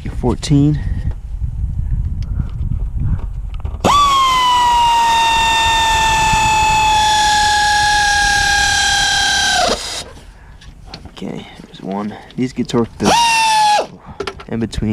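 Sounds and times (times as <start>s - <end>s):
power tool motor whining: 3.8s - 10.1s, 13.0s - 13.9s.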